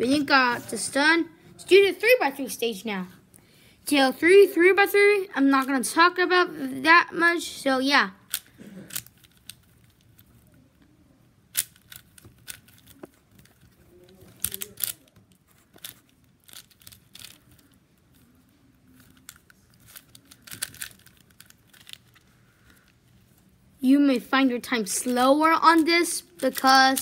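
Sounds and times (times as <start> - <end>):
plastic puzzle cube clicking: 8.3 - 10.6, 11.5 - 18.3, 19.0 - 22.9.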